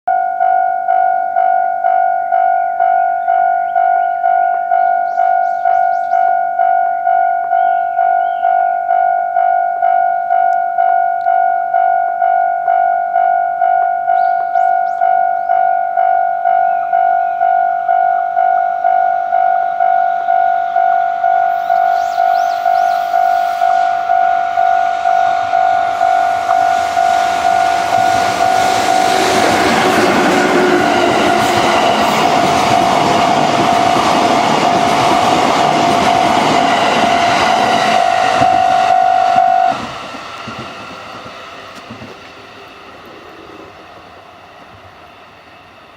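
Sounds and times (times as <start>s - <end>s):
level-crossing warning bell: 0.1s - 45.9s
train wheels rushing on rails: 20.6s - 45.9s.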